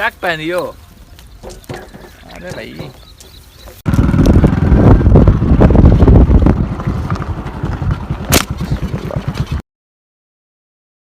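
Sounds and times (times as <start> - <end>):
wind buffeting microphone: 1.3 - 9.6.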